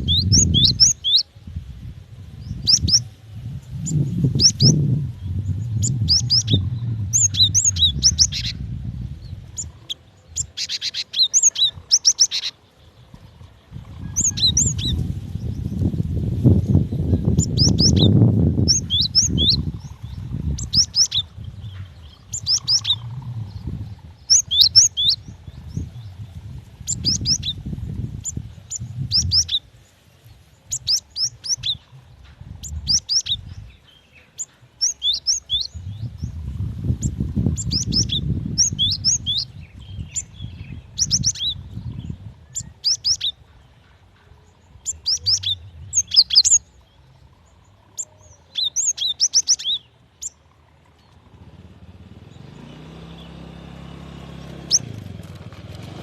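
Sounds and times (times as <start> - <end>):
low rumble: 1.4 - 10.6, 12.8 - 29.5, 35.7 - 42.8.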